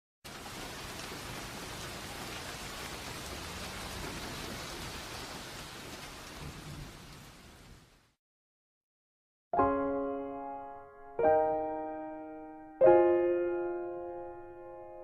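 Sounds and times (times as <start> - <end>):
steady rain: 0.2 - 8.2
thunder rumbling: 6.3 - 7.4.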